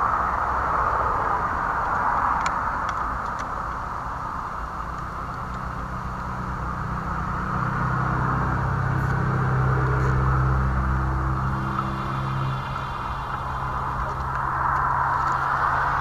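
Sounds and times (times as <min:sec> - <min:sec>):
constant hiss: 0:00.0 - 0:16.0
engine humming: 0:00.0 - 0:16.0.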